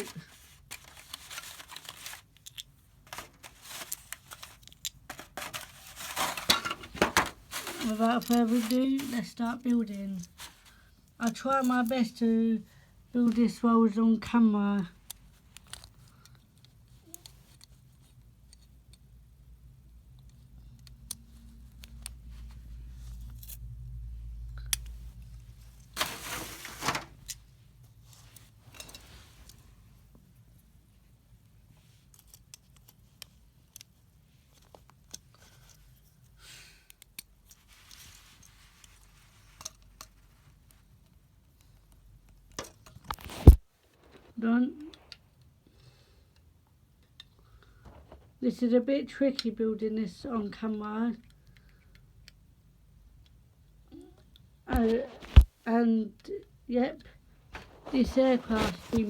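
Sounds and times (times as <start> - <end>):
packaging rustling: 0.0 - 10.8, 25.8 - 27.3, 57.5 - 59.0.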